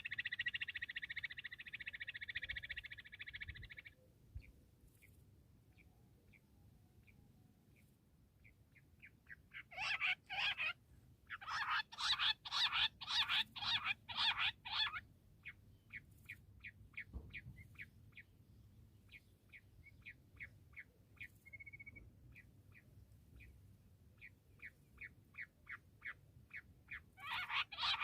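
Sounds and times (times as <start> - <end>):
quail calling: 0.0 - 4.0, 9.2 - 16.0, 24.6 - 28.0.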